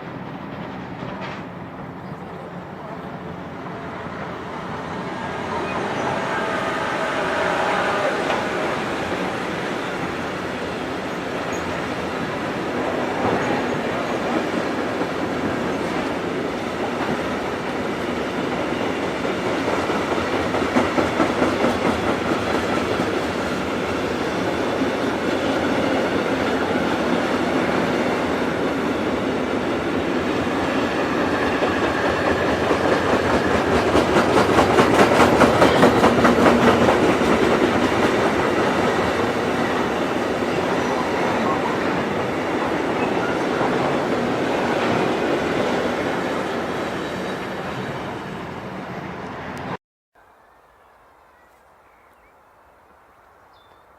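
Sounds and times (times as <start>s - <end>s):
freight train wagons rumbling: 0.0s - 49.7s
wheel clacks over rail joints: 31.3s - 40.0s.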